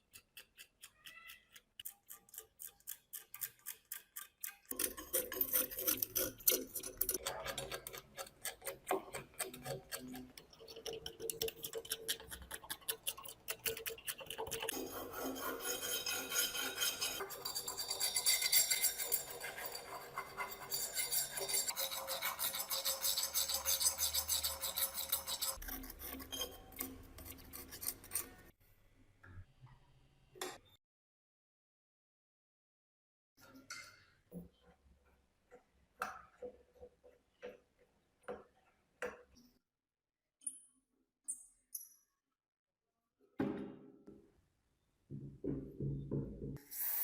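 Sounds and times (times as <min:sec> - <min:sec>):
rust being scraped off steel: 0:11.7 - 0:28.5.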